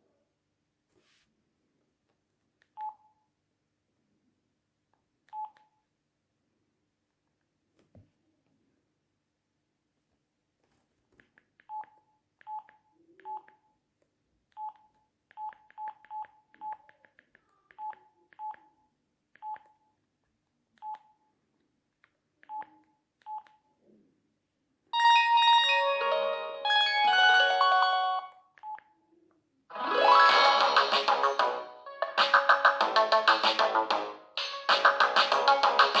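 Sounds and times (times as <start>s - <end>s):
polyphonic ringtone melody: 25.0s - 28.3s, 29.7s - 36.0s.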